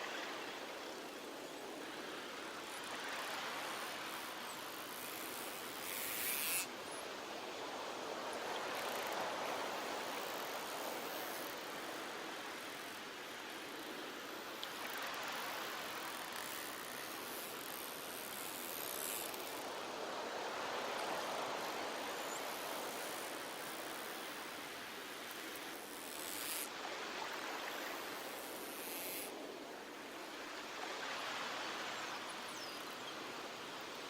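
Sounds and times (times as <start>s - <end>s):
ocean surf on beach: 0.0s - 34.0s.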